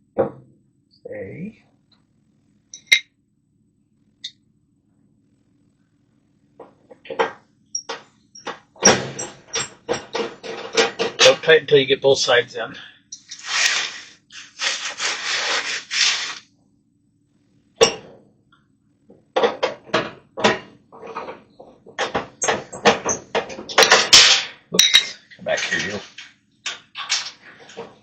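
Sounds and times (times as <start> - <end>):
sheet metal scraping and clattering: 6.7 - 11.6, 19.4 - 28.0.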